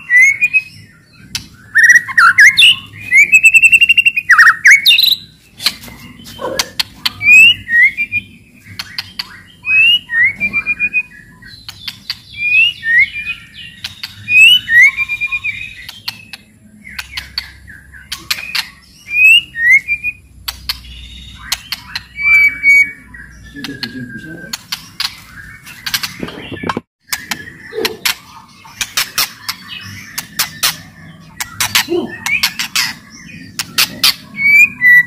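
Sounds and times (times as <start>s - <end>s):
bird singing clicks and whistles: 8.7s - 11.0s, 13.8s - 22.9s, 25.8s - 35.0s.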